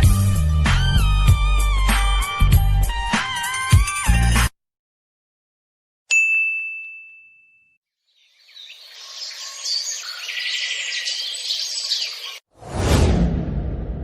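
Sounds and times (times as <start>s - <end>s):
single ding: 6.1s - 7.8s
birds chirping: 8.0s - 12.4s
deep boom: 12.7s - 14.0s.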